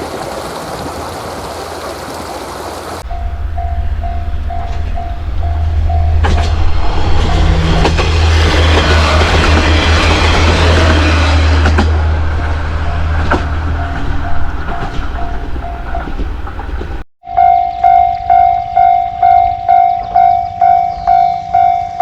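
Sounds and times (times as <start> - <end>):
train wheels rushing on rails: 3.0 - 17.0
wheels clacking over rail joints: 3.0 - 17.0
diesel train engine drone: 3.0 - 17.1
level-crossing bell clanging: 3.0 - 22.0.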